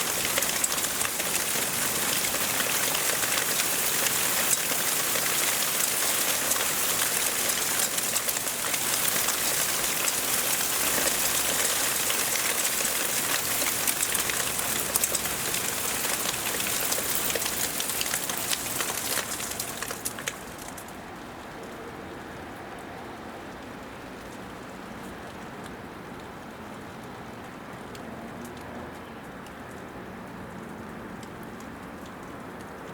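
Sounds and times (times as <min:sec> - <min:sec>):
hail striking hard surfaces: 0:00.0 - 0:21.0.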